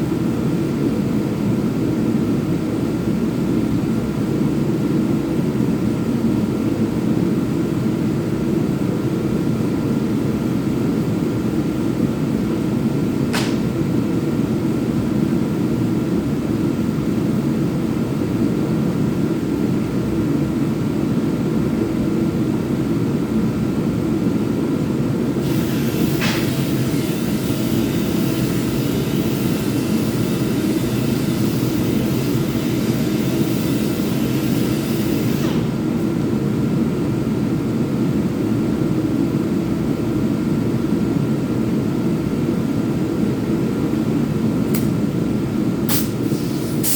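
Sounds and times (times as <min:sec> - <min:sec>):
high-pitched hiss: 0:25.5 - 0:35.6.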